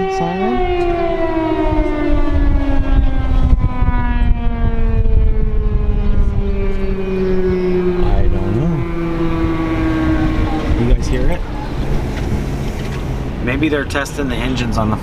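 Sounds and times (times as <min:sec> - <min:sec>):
warning siren winding down: 0:00.0 - 0:13.4.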